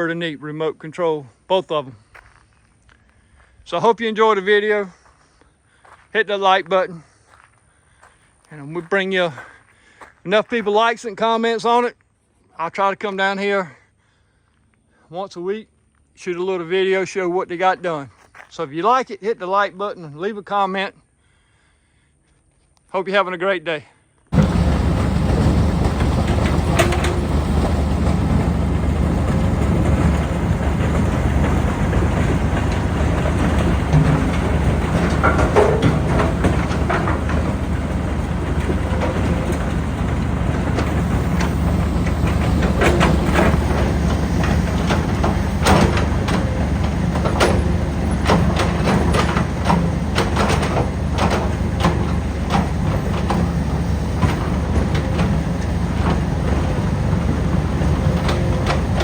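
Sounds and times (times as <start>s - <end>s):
crusher machinery rumbling: 24.3s - 59.0s
chunks knocking and clattering: 24.4s - 59.0s.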